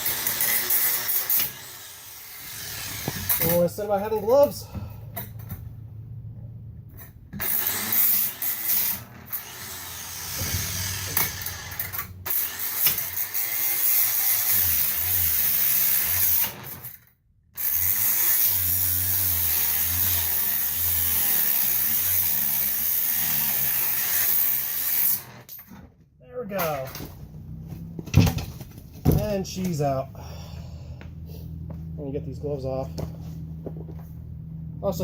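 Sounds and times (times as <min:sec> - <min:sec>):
angle grinder cutting metal: 0:00.0 - 0:04.2, 0:07.4 - 0:17.0, 0:17.6 - 0:25.6.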